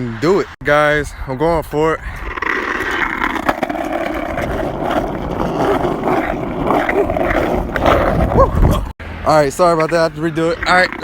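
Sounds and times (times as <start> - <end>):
skateboard wheels rolling on asphalt: 2.0 - 8.9, 9.7 - 11.0.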